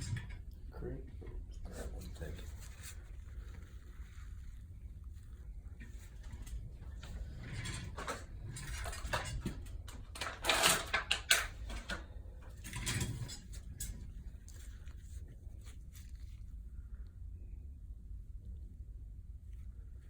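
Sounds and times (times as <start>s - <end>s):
handling rustles: 1.8s - 16.8s.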